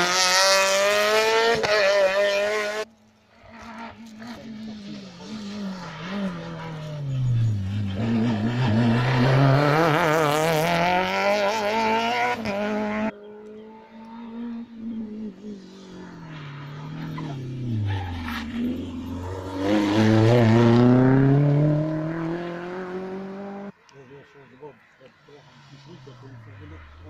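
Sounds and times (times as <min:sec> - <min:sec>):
rally car engine revving: 0:00.0 - 0:23.7.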